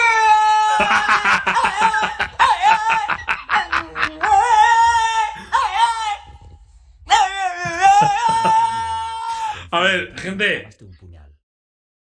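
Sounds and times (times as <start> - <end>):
dog howling: 0.0 - 6.5, 7.1 - 9.6.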